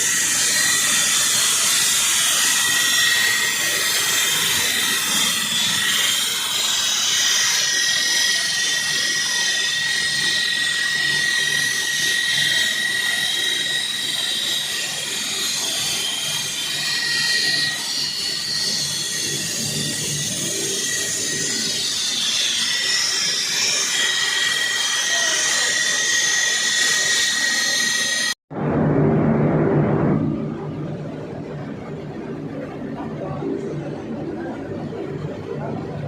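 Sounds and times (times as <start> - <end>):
floor saw cutting concrete: 0.0 - 28.4.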